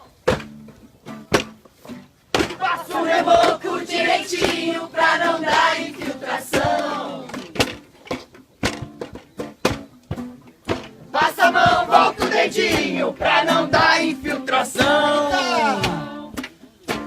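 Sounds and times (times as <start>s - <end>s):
group of voices shouting: 2.6s - 7.4s, 11.2s - 16.3s
sharp knocks: 6.5s - 11.0s.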